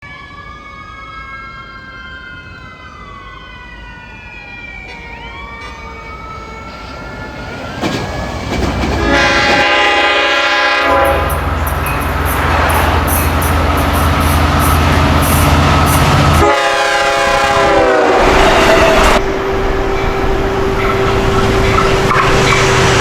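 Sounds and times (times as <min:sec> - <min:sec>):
locomotive whining tones: 0:00.2 - 0:23.0
train horn: 0:08.9 - 0:23.0.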